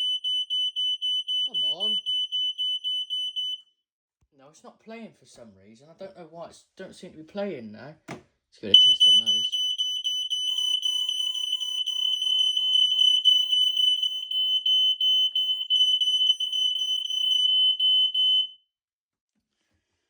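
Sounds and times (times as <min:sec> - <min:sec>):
smoke alarm tone: 0:00.0 - 0:03.7, 0:08.8 - 0:18.6.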